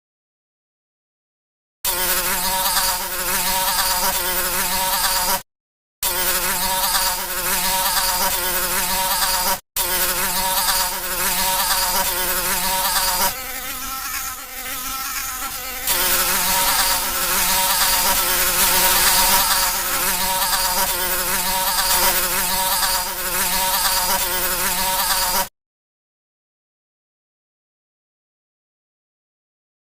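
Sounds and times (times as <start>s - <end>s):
flies buzzing: 1.9s - 5.4s, 6.0s - 25.5s.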